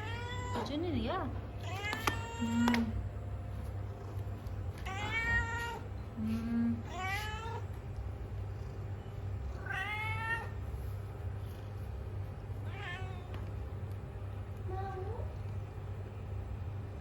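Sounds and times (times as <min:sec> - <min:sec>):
cat meowing: 0:00.0 - 0:00.7, 0:01.6 - 0:02.9, 0:04.8 - 0:05.9, 0:06.9 - 0:07.7, 0:09.6 - 0:10.6, 0:12.7 - 0:13.3
steady low hum: 0:00.0 - 0:17.0.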